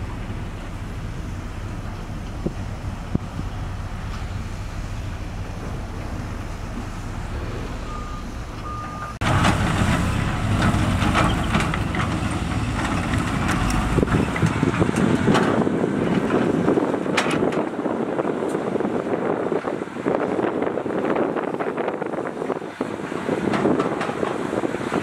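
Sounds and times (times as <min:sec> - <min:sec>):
diesel machinery running: 0:00.0 - 0:25.0
reversing beeps: 0:07.6 - 0:09.2.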